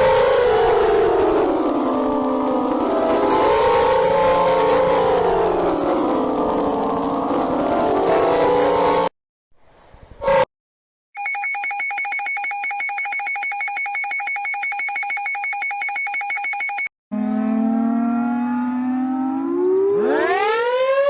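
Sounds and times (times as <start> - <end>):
steep rising siren tone: 0.0 - 9.1, 17.1 - 21.0
two-tone pulsing alarm beep: 11.2 - 16.9
siren winding up: 13.0 - 21.0.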